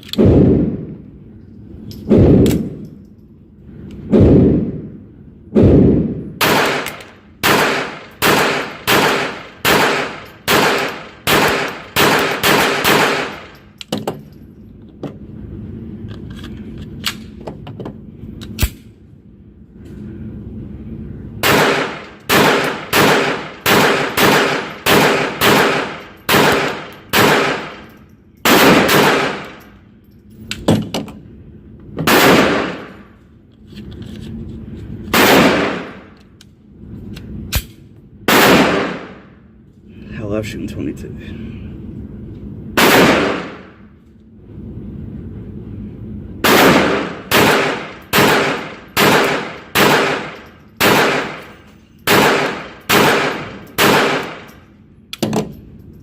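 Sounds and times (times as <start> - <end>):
pistol shots: 5.6 - 13.5, 21.4 - 27.8, 28.4 - 29.6, 32.0 - 32.9, 35.1 - 36.1, 38.3 - 39.3, 42.8 - 43.7, 46.4 - 51.5, 52.1 - 54.5.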